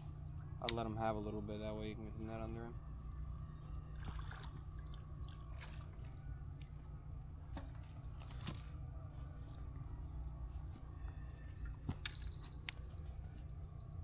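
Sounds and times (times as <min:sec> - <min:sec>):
steady low rumble: 0:00.0 - 0:14.0
handling and water sounds: 0:01.8 - 0:10.8.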